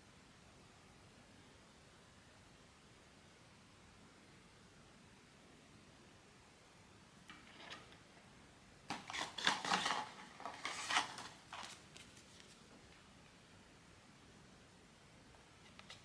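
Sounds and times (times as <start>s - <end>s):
packaging rustling and crackling: 8.9s - 12.8s.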